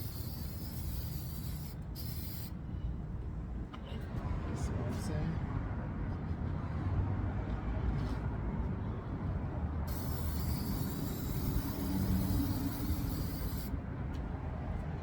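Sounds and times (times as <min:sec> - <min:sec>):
aerosol can spraying: 0:00.0 - 0:02.5, 0:09.9 - 0:13.7.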